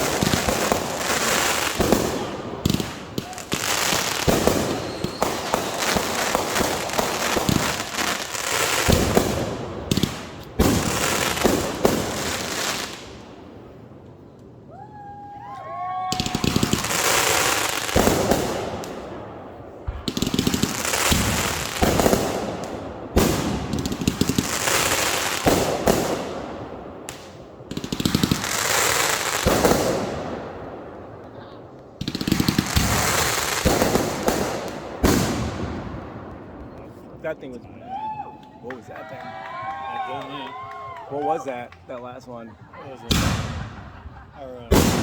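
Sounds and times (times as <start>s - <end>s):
fireworks whistling: 0.0s - 13.2s, 16.1s - 19.0s, 19.9s - 26.3s, 32.0s - 35.6s, 43.0s - 45.0s
fireworks bangs and crackling: 0.0s - 14.0s, 16.0s - 38.0s, 42.6s - 45.0s.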